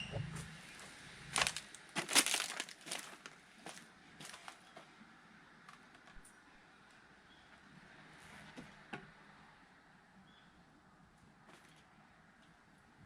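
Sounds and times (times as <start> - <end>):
dry wood cracking: 1.4 - 4.6.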